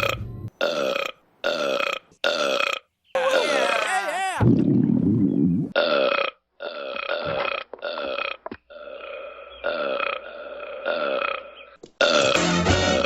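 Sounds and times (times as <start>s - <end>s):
person belching: 5.8s - 12.6s.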